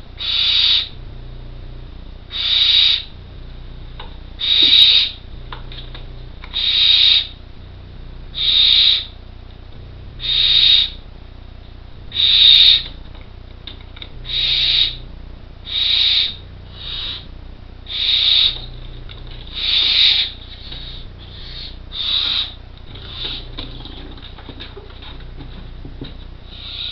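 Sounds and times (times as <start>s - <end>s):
owl chicks hissing calls: 0.2s - 1.0s, 2.3s - 3.1s, 4.4s - 5.2s, 6.5s - 7.4s, 8.3s - 9.2s, 10.2s - 11.0s, 12.1s - 12.9s, 14.2s - 15.0s, 15.6s - 17.3s, 17.9s - 18.8s, 19.5s - 23.9s, 26.5s - 26.9s.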